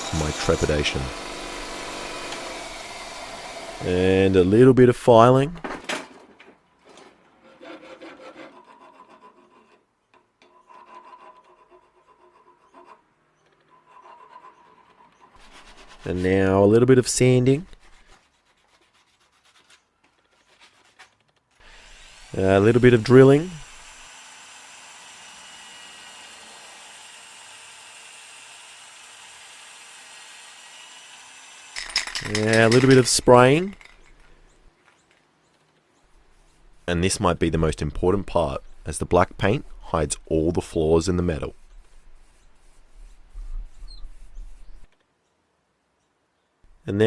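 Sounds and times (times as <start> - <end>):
hand file rasping on metal: 7.4 - 16.6, 40.8 - 44.9.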